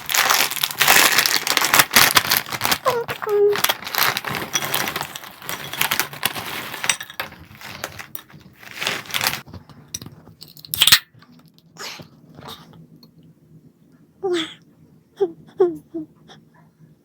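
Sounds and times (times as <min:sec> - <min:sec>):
plastic snack bag crinkling: 0:00.0 - 0:09.6.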